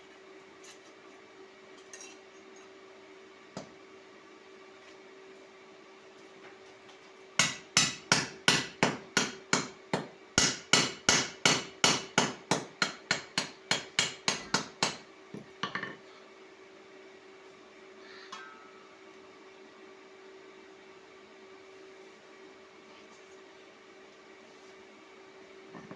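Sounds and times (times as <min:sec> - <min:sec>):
hammer striking metal: 0:07.4 - 0:15.0.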